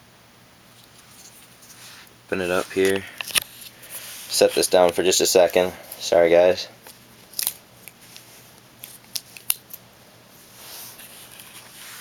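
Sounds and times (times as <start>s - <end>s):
soft rustle: 0.7s - 6.0s, 6.8s - 9.2s, 10.3s - 12.0s.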